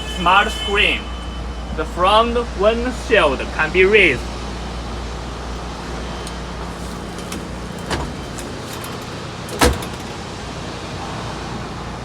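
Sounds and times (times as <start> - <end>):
windshield clunking: 4.2 - 10.5.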